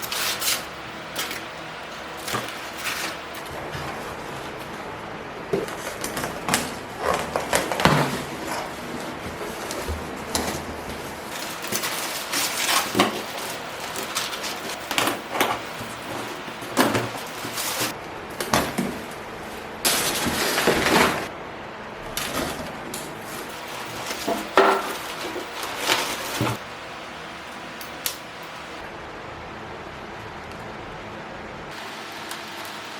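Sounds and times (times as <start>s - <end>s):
rustling noise: 0.0s - 21.3s, 22.0s - 26.6s.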